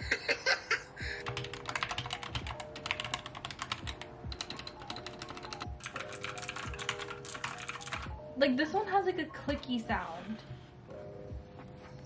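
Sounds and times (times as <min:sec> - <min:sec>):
background music: 0:00.0 - 0:12.0
mechanical keyboard typing: 0:01.2 - 0:08.2.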